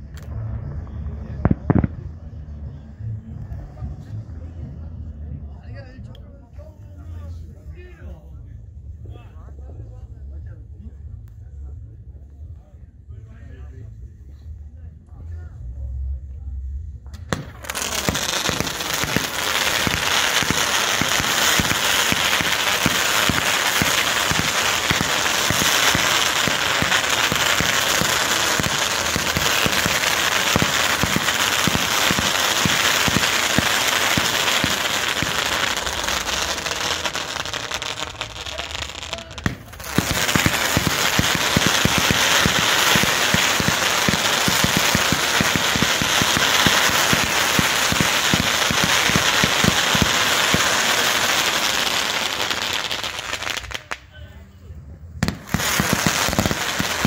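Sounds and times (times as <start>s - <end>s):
fireworks crackling: 17.2s - 54.5s, 55.2s - 57.0s.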